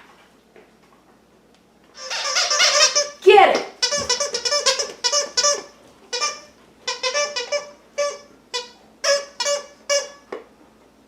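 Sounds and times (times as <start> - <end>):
squeaky dog toy squeaking: 2.0 - 10.2.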